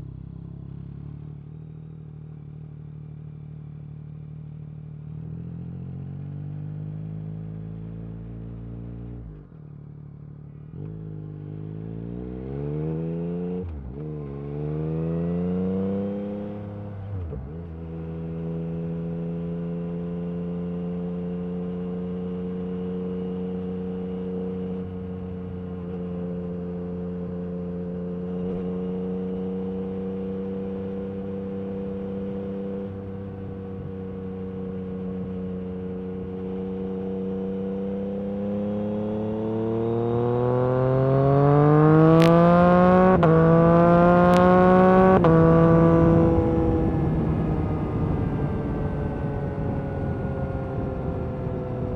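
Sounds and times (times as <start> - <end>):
motorcycle engine revving: 10.5 - 51.9.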